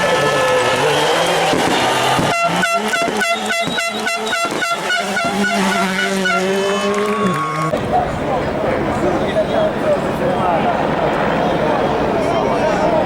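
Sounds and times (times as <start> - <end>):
air horn blasts: 0.0 - 7.7.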